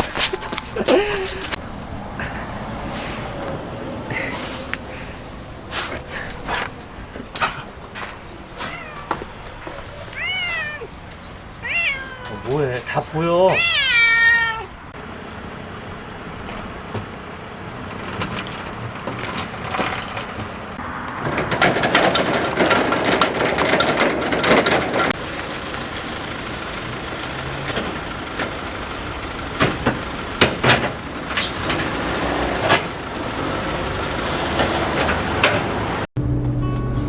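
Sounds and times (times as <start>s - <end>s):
vehicle engine running: 0.0s - 12.0s, 14.8s - 37.0s
dense knocks and rattles: 16.4s - 36.0s.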